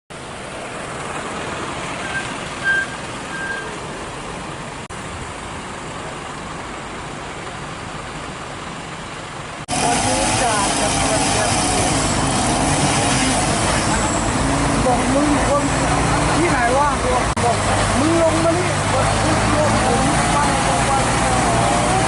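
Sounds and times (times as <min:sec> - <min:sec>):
road traffic noise: 0:00.1 - 0:22.0
short high beeps: 0:02.0 - 0:03.8.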